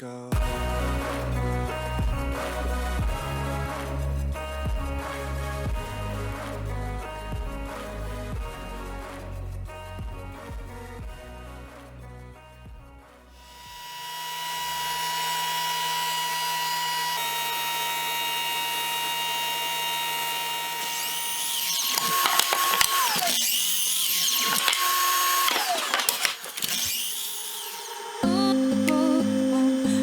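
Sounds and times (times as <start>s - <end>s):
power tool cutting wood: 13.4s - 30.0s.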